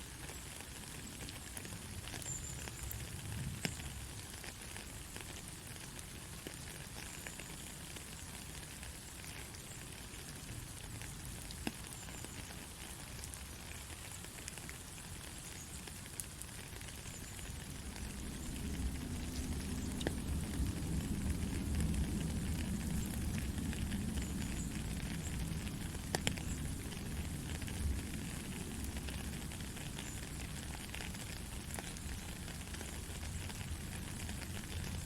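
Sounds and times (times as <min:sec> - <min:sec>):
rain drop ticks: 0:00.0 - 0:35.0
soft rain falling: 0:00.0 - 0:35.0
low rumble: 0:17.6 - 0:25.8.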